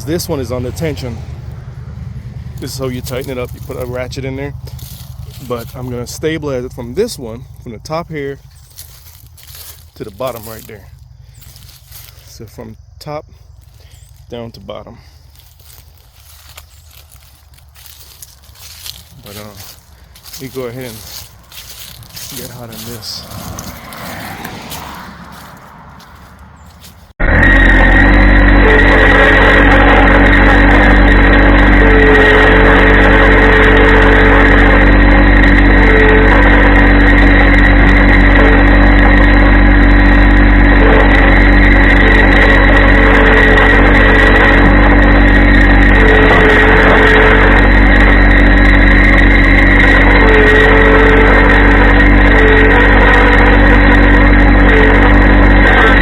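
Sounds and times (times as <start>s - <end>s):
diesel tractor engine running: 0.0s - 56.0s
faint whine: 27.2s - 56.0s.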